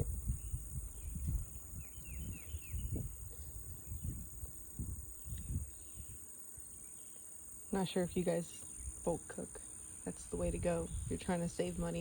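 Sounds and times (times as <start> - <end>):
small bird chirping: 0.0 - 4.2
insects chirring: 0.0 - 12.0.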